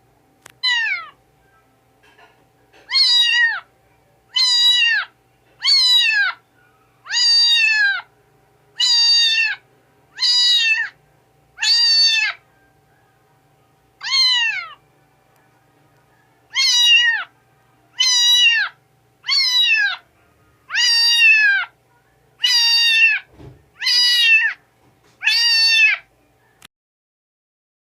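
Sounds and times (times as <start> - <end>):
kitten meowing: 0.6 - 1.2, 2.9 - 3.7, 4.3 - 6.4, 7.1 - 8.1, 8.8 - 9.6, 10.2 - 11.0, 11.6 - 12.4, 14.0 - 14.8, 16.5 - 17.3, 18.0 - 20.0, 20.7 - 21.7, 22.4 - 24.6, 25.2 - 26.0.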